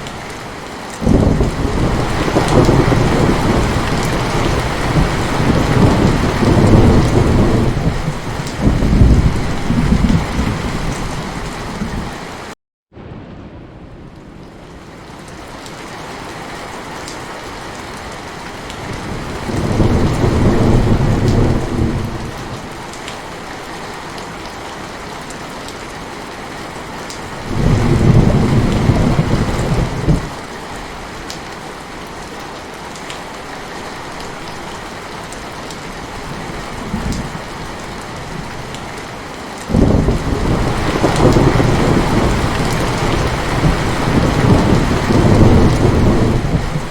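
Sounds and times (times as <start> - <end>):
heavy rain falling: 0.0 - 46.9
rolling thunder rumbling: 1.0 - 12.2, 18.8 - 22.7, 27.4 - 30.4, 39.7 - 46.9.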